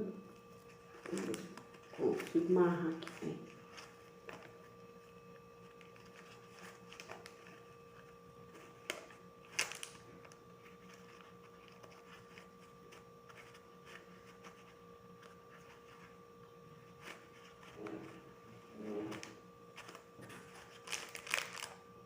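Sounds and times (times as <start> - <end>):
faint hum: 0.0 - 22.0
rustling of ribbon and package: 0.6 - 4.6, 19.0 - 21.8.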